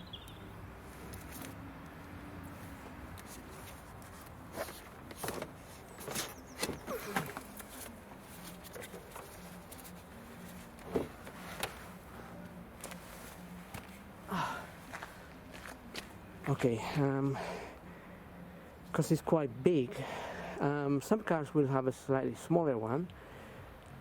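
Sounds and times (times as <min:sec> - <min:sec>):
low steady hum: 0:00.0 - 0:22.4.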